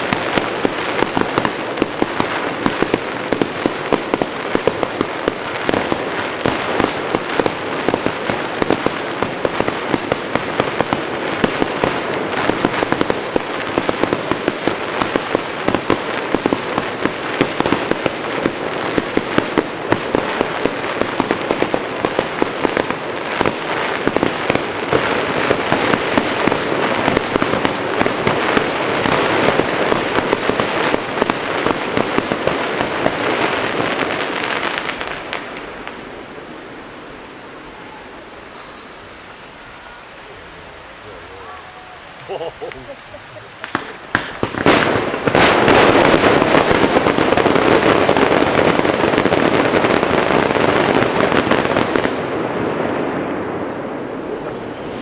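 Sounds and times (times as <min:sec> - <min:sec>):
fireworks bangs and crackling: 0:00.0 - 0:55.0.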